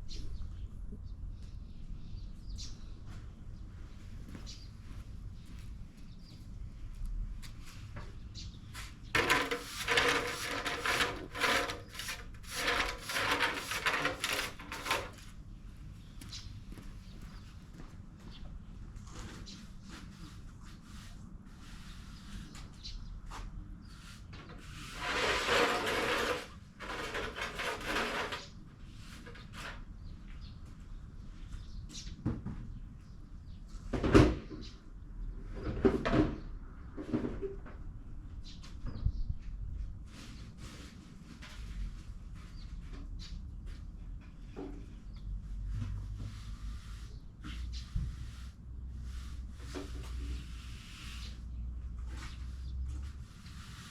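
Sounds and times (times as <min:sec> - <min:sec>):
objects knocking and clattering: 0:09.1 - 0:15.2.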